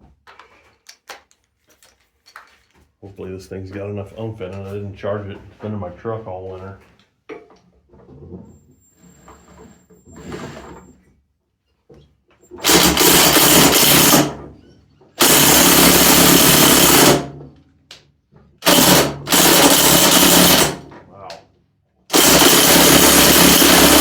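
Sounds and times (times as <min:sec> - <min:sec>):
impact wrench hammering: 0:12.6 - 0:14.5, 0:15.2 - 0:17.4, 0:18.6 - 0:21.0, 0:22.1 - 0:24.0.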